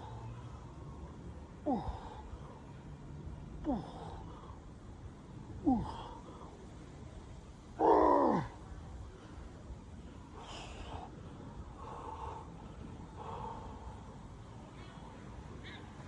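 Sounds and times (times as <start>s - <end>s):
man grunting: 3.6s - 4.2s, 7.8s - 8.5s.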